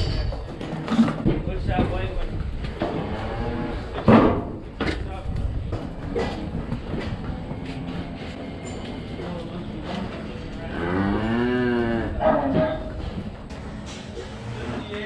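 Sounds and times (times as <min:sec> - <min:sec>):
cow mooing: 0:10.6 - 0:12.9.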